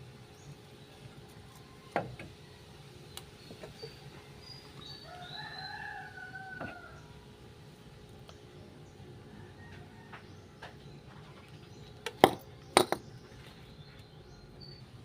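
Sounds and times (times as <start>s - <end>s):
rooster crowing: 5.0s - 7.2s, 9.3s - 10.6s.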